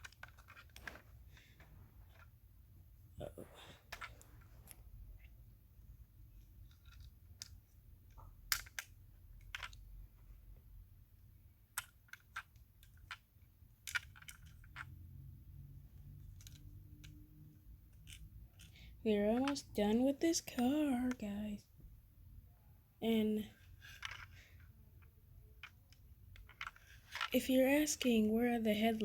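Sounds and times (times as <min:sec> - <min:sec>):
toy car parts clicking: 0:00.0 - 0:00.9, 0:06.5 - 0:09.9, 0:11.7 - 0:15.0, 0:16.2 - 0:17.2, 0:17.8 - 0:19.7, 0:23.6 - 0:28.1.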